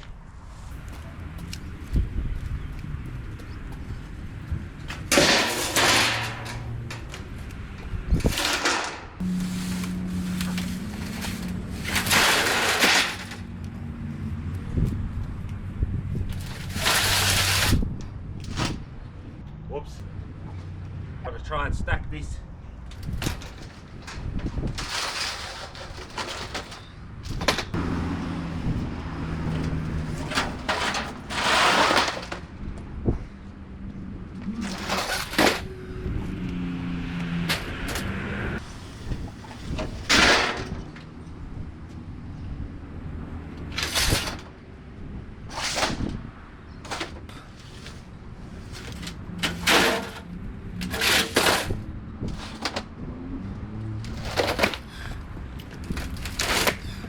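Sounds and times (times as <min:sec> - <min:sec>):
debris knocking and clattering: 0:04.9 - 0:07.3, 0:08.2 - 0:13.5, 0:23.0 - 0:28.1, 0:39.2 - 0:41.1.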